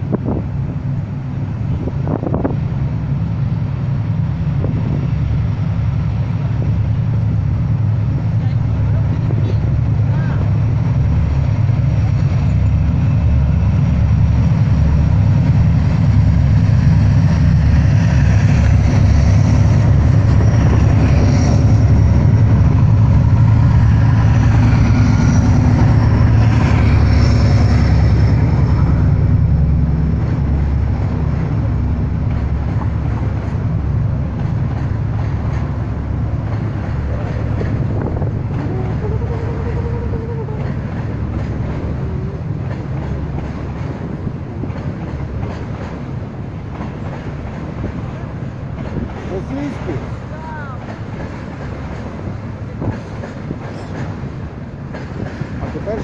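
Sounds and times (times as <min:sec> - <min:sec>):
diesel locomotive engine rumble: 0:00.0 - 0:56.0.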